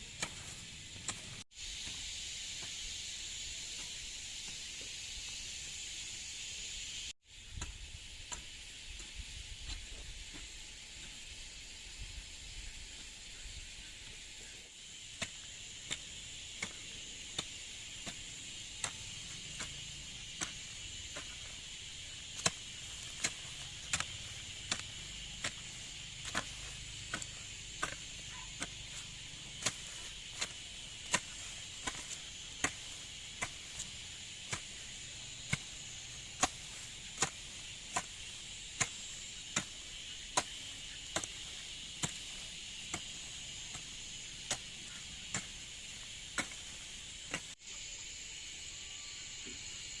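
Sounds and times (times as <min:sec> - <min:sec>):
hand tool striking ground: 0:00.0 - 0:47.6
insects droning: 0:00.0 - 0:50.0.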